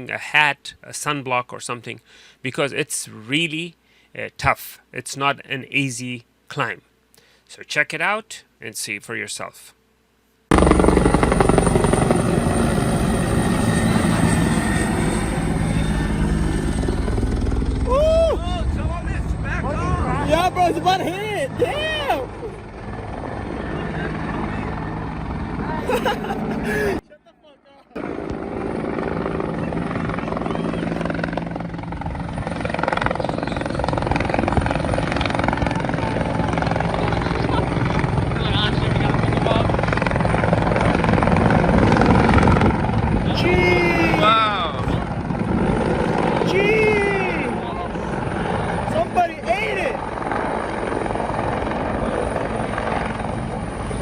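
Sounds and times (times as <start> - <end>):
helicopter rotor beat: 10.5 - 27.0, 28.0 - 54.0.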